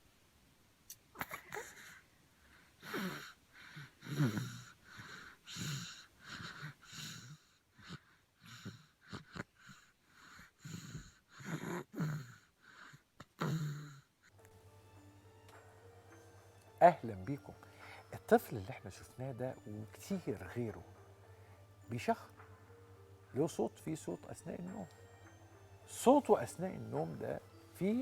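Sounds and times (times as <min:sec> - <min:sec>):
child snoring: 0:02.8 - 0:14.3.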